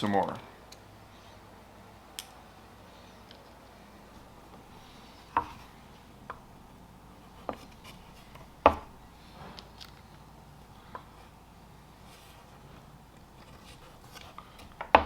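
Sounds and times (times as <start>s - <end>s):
rustling: 2.9s - 15.0s
objects tapping on workbench: 8.4s - 8.9s.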